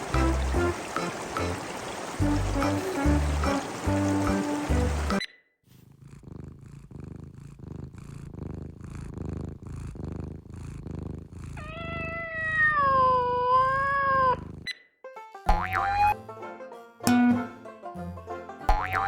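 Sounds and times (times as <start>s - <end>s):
cat purring: 2.2s - 14.7s
cat meowing: 11.6s - 14.5s.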